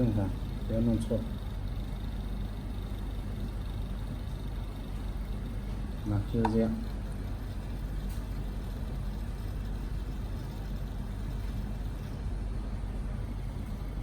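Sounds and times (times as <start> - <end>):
constant hiss: 0.0 - 14.0
steady low hum: 0.0 - 14.0.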